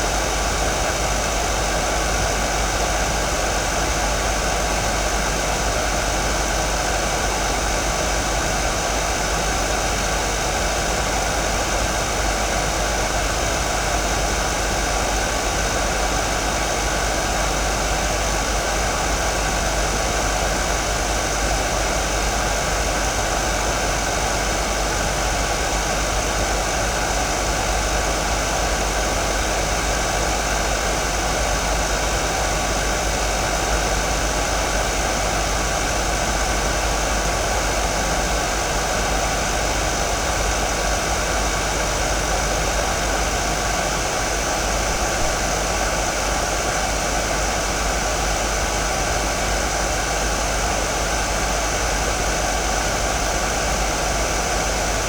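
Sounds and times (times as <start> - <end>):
hair dryer running: 42.9 - 47.9.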